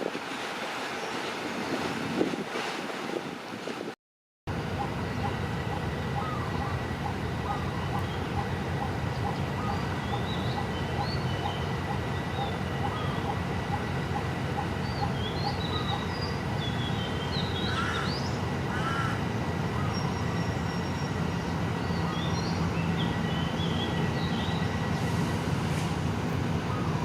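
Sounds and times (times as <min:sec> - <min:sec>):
diesel locomotive idling: 0:04.5 - 0:27.0
birds calling: 0:04.7 - 0:25.0.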